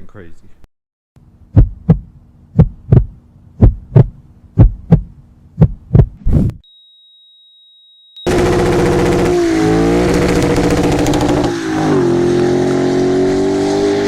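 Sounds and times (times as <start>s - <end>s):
car engine accelerating: 8.3s - 14.0s.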